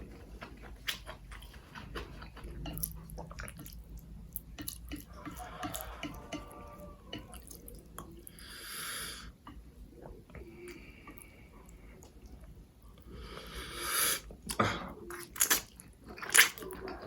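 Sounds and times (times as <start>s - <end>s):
mouth chewing noodles: 0.0s - 17.0s
breathy hiss: 8.3s - 9.3s, 13.1s - 14.3s.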